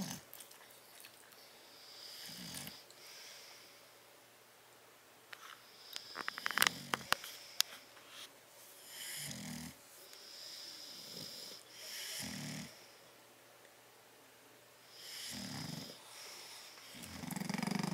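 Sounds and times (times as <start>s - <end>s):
dog snoring: 1.8s - 2.8s, 6.1s - 7.2s, 8.8s - 12.9s, 14.9s - 17.9s.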